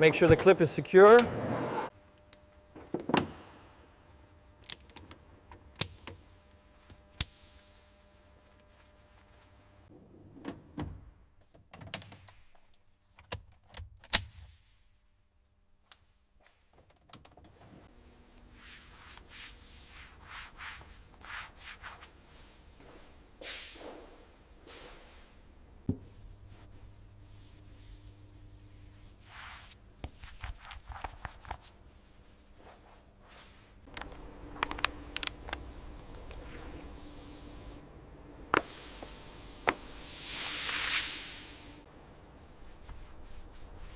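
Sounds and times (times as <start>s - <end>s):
soft rubbing strokes: 6.4s - 9.9s, 18.2s - 25.4s, 26.0s - 37.8s, 42.0s - 43.9s.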